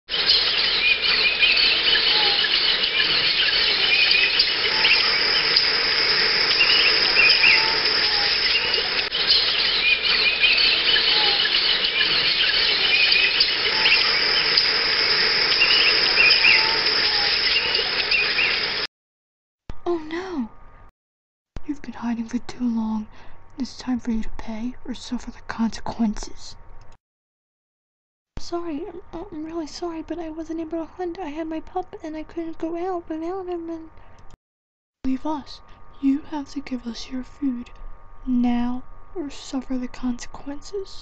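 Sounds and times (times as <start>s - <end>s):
steady dense hiss: 3.7s - 18.9s.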